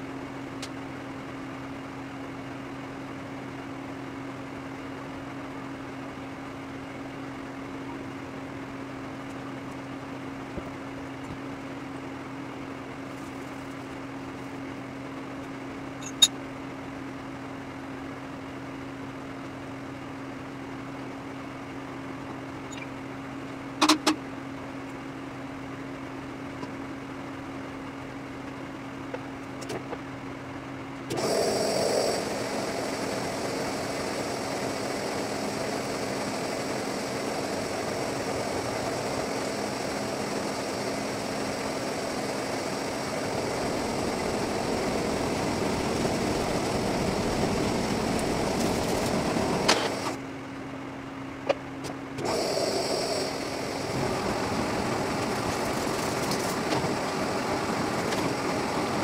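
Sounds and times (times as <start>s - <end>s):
shop machinery humming: 21.0s - 59.0s
loud mechanical sound: 31.1s - 50.2s, 51.8s - 59.0s.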